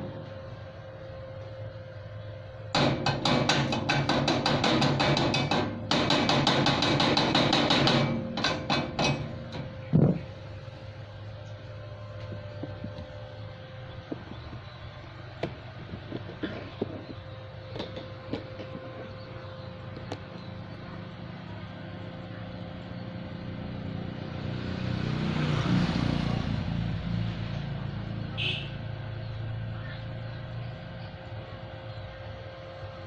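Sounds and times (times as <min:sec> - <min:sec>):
vehicle passing by: 0:20.8 - 0:31.1.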